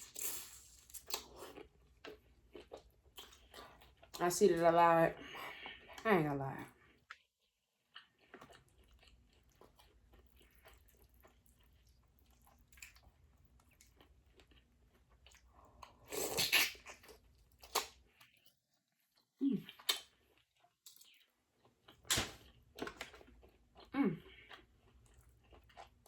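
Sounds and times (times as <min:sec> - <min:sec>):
wet chewing and smacking: 0:01.0 - 0:04.3, 0:06.8 - 0:26.0.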